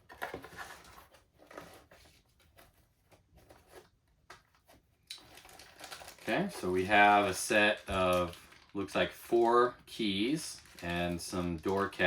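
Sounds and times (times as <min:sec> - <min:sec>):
package rustling: 0:03.4 - 0:12.0.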